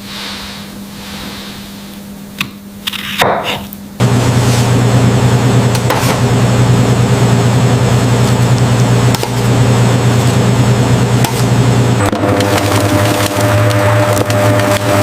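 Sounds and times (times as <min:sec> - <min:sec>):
motor humming: 0:04.0 - 0:15.0.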